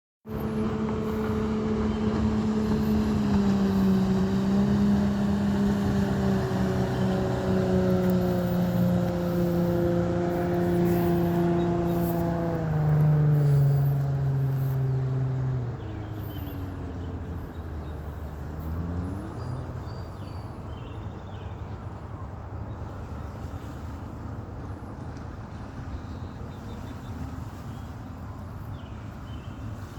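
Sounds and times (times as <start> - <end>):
boat engine drone: 0.2 - 29.9.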